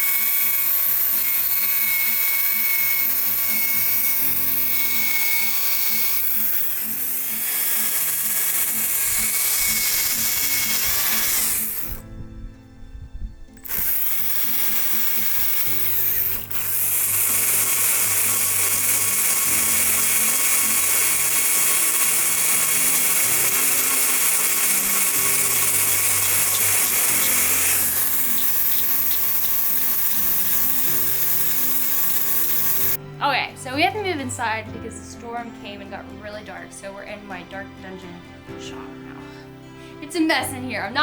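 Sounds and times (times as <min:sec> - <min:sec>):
power tool whining: 0:00.0 - 0:12.2, 0:13.5 - 0:33.0
background music: 0:00.0 - 0:41.0.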